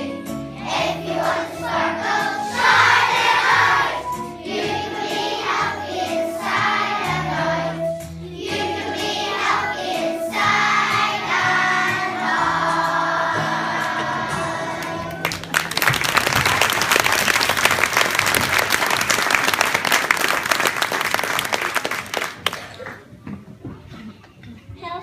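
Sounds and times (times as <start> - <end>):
children singing: 0.0 - 15.2
music: 0.0 - 22.4
audience applause: 15.0 - 23.1.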